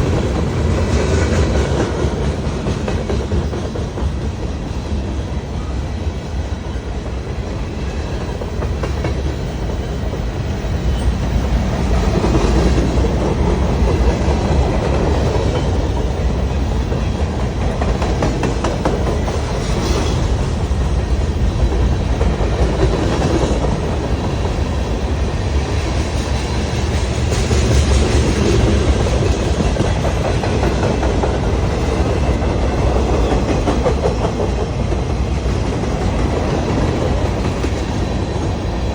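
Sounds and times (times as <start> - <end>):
train rumbling past: 0.0 - 38.9
wheels clacking over rail joints: 7.1 - 25.0, 25.7 - 38.8.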